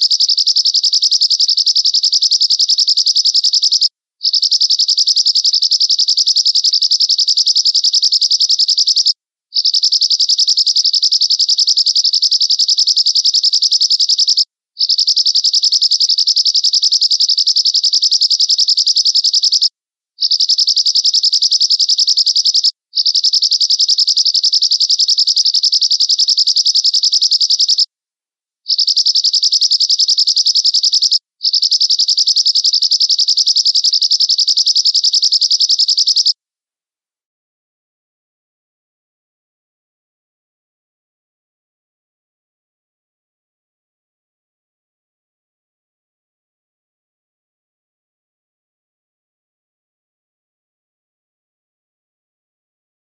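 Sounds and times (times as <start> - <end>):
finch singing high trills: 0.0 - 27.9, 28.7 - 36.4.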